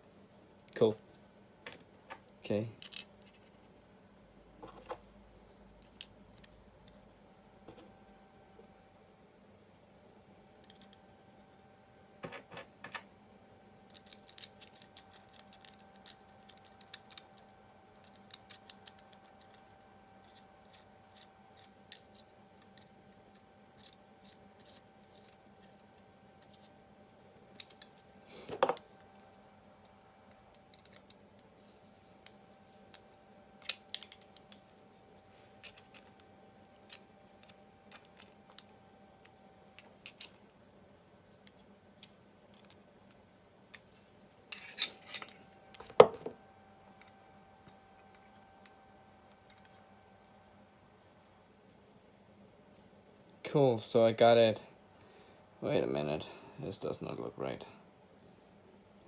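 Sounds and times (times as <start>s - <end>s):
metal parts clicking and scraping: 13.9s - 17.4s, 30.5s - 31.2s, 35.6s - 36.2s, 36.8s - 38.6s, 39.8s - 40.4s, 44.5s - 45.4s.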